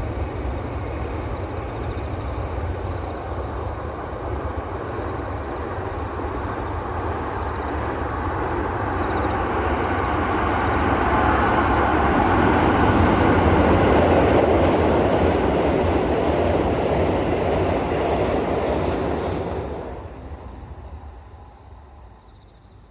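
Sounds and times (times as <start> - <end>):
train passing rumble: 0.0 - 22.9.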